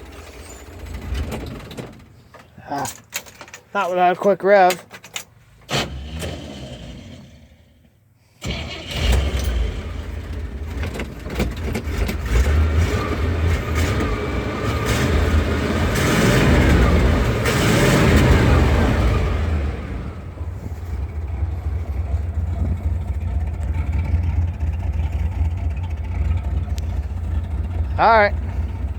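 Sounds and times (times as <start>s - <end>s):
pickup engine starting and revving: 0.0s - 2.3s, 5.6s - 28.9s.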